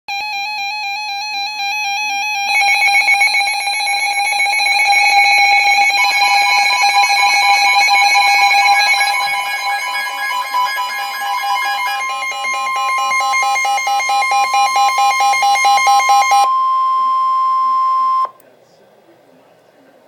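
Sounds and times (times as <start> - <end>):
steady high tone: 0.1 - 18.4
warbling electronic alert tone: 1.1 - 18.3
rapidly pulsing tone: 2.0 - 16.7.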